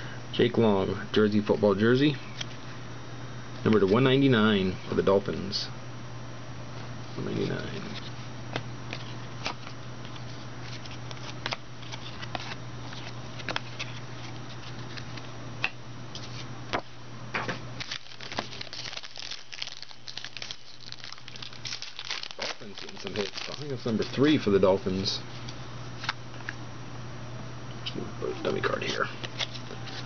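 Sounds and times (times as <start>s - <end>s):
steady low hum: 0.0s - 30.0s
plastic wrapping crinkling: 17.8s - 24.2s.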